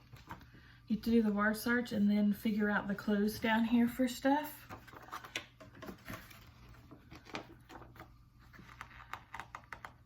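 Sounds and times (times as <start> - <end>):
paper and cards rustling: 4.6 - 10.0.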